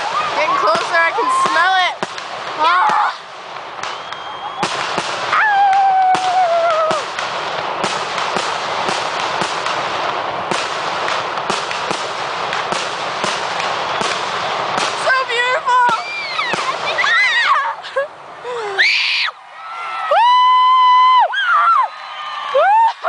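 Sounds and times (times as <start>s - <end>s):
fireworks bangs and crackles: 0.0s - 18.3s
slowly falling whistle tone: 3.9s - 4.7s.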